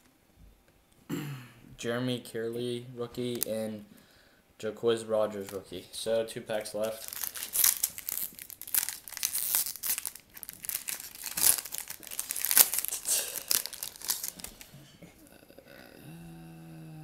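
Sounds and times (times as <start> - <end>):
wrapper crinkling and tearing: 6.8 - 14.8.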